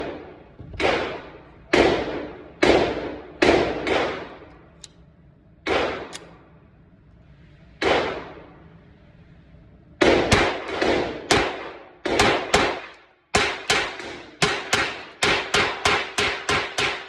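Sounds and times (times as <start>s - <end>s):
pistol shots with echo: 0.0s - 4.5s, 5.6s - 6.2s, 10.0s - 17.0s.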